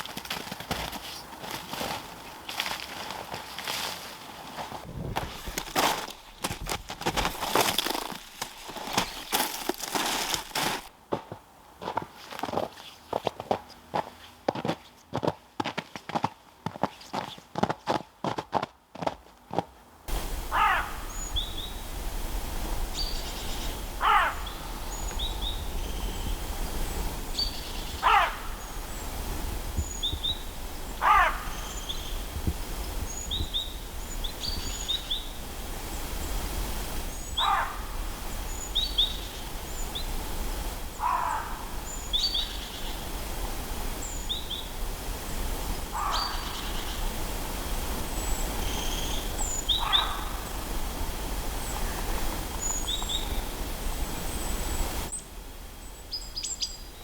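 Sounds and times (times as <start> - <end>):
small birds chirping: 20.5 - 22.0, 22.9 - 36.2, 38.3 - 40.2, 40.9 - 43.1, 51.6 - 53.6.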